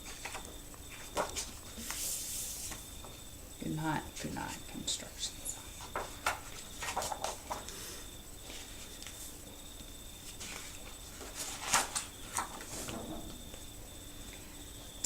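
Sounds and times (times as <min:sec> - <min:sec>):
book pages rustling: 0:00.0 - 0:02.9, 0:05.7 - 0:07.8, 0:08.4 - 0:09.4, 0:10.2 - 0:13.2
faint high whine: 0:00.0 - 0:15.0.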